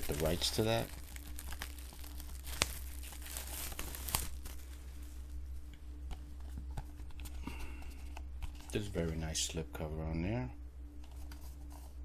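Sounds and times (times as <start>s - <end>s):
cardboard rustling and crinkling: 0.0s - 5.3s
steady low hum: 0.0s - 12.0s.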